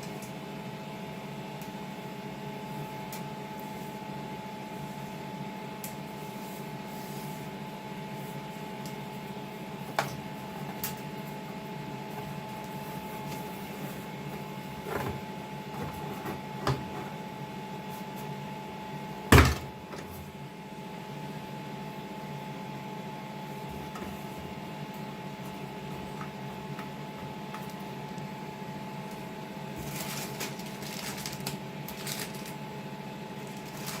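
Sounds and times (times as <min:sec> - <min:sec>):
washing machine humming: 0:00.0 - 0:34.0
rustling: 0:29.8 - 0:32.6, 0:33.4 - 0:34.0.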